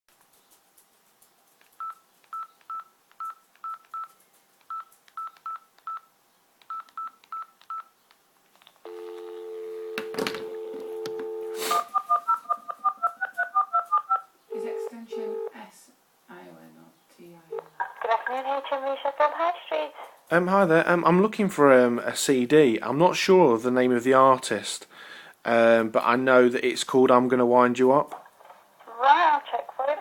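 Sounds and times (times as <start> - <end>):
keypad beeps: 1.8 - 6.1, 6.7 - 7.9
telephone dial tone: 8.9 - 12.5.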